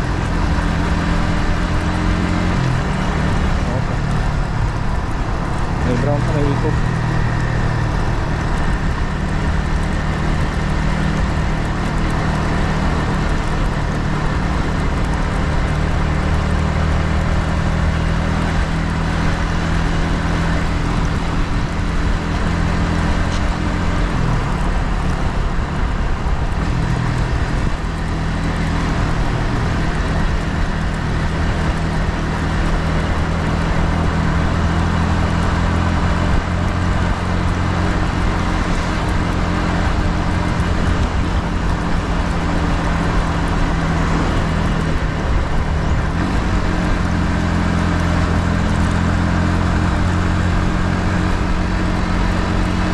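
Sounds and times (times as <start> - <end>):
motorcycle engine running: 0.0 - 52.9
wind and road noise: 0.0 - 52.9.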